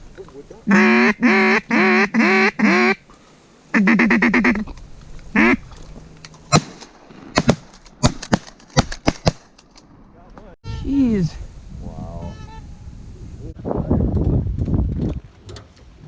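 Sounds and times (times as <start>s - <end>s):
duck call quacking: 0.7s - 3.0s, 3.7s - 4.6s, 5.4s - 5.6s
shotgun fire: 6.5s - 9.5s.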